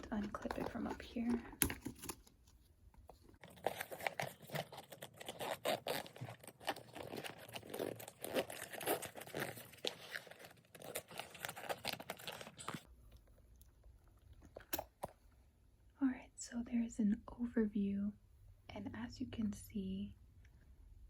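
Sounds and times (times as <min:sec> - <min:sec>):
zipper unzipping: 0:03.6 - 0:12.8.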